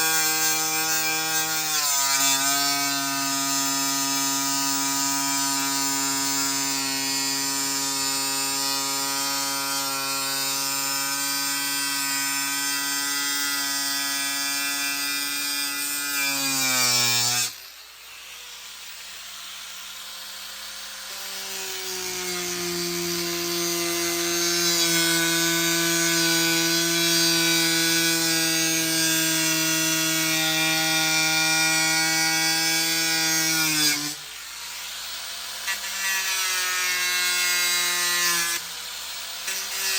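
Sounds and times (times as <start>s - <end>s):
power tool motor running: 2.6s - 31.0s.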